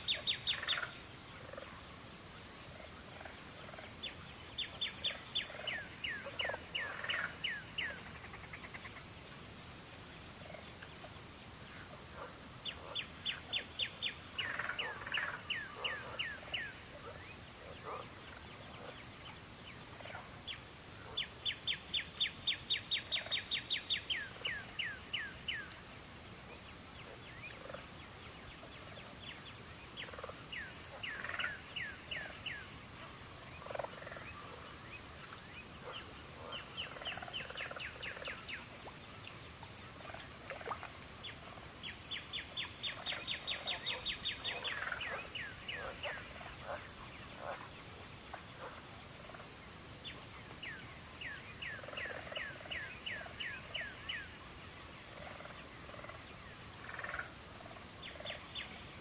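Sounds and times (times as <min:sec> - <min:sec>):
crickets chirping: 0:00.0 - 0:59.0.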